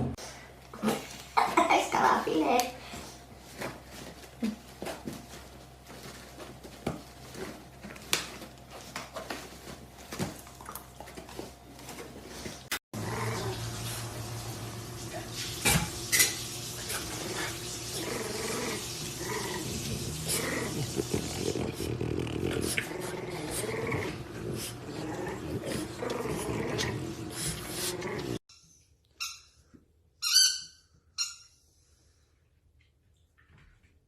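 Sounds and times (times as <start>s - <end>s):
dog growling: 13.0s - 13.8s, 17.1s - 28.4s.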